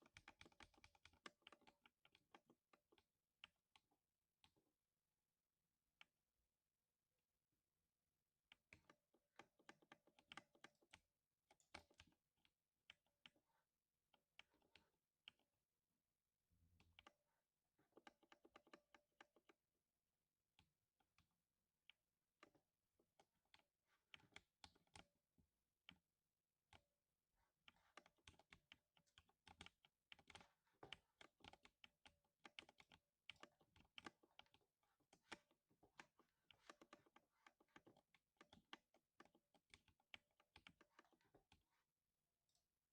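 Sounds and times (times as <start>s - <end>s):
mechanical keyboard typing: 27.7s - 41.6s.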